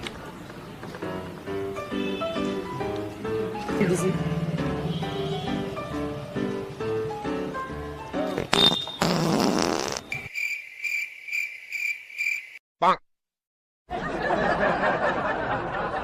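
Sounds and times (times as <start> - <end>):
wet fart sound: 8.3 - 10.2
cricket chirps: 10.1 - 12.6.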